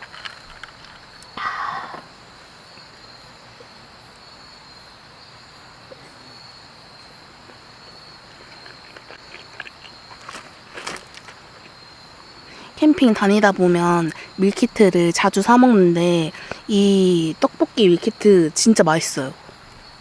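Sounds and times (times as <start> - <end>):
rustling clatter: 0.0 - 1.1
crickets chirping: 0.0 - 20.0.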